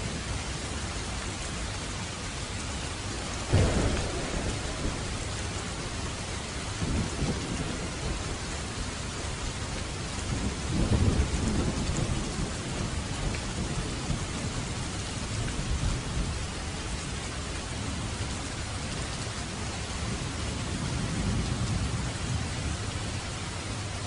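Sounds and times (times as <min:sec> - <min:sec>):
heavy rain: 0:00.0 - 0:24.0
low rumbles of thunder: 0:00.0 - 0:24.0
sharp thunderclap: 0:03.4 - 0:16.4.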